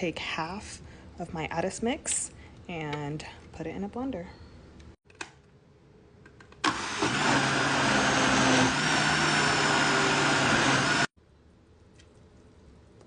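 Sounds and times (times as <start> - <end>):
blender motor running: 6.6 - 11.2.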